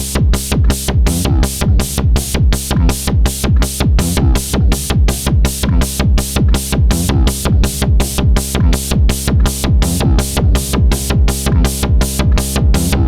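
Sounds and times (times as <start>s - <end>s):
hi-hats ticking: 0.0s - 13.0s
synthesized bass drum beating: 0.0s - 13.0s
sustained synth tone: 5.6s - 13.0s.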